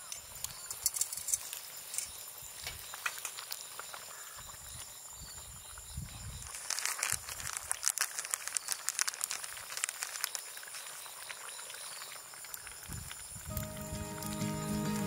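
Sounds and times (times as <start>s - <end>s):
campfire crackling and popping: 0.0s - 4.6s, 6.4s - 15.0s
background music: 13.5s - 15.0s.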